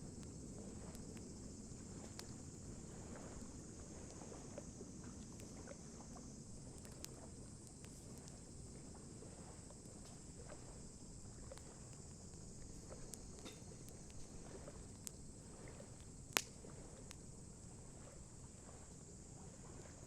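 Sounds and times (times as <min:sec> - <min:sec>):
fire pops: 0:00.0 - 0:02.4, 0:11.5 - 0:14.3, 0:16.0 - 0:17.2
campfire crackling: 0:00.0 - 0:05.6, 0:06.2 - 0:08.7, 0:09.6 - 0:17.8.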